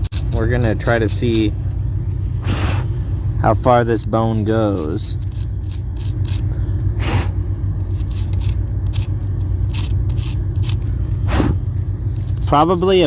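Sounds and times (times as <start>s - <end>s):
steady low rumble: 0.0s - 13.0s
knife scraping rock: 5.1s - 11.6s.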